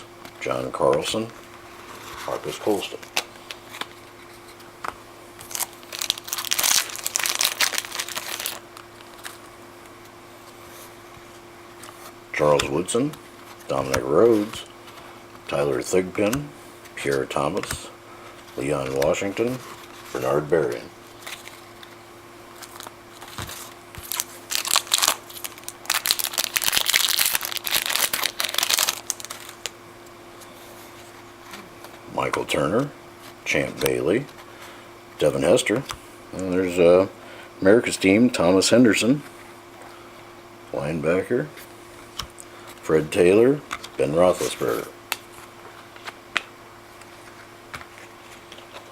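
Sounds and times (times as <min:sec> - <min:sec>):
plastic wrapper crinkling: 0:05.4 - 0:09.5, 0:22.6 - 0:29.8.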